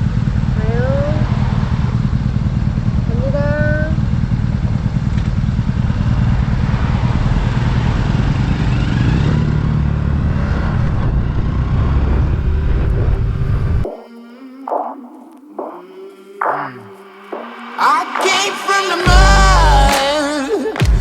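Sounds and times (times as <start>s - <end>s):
motorcycle running: 0.0s - 12.7s.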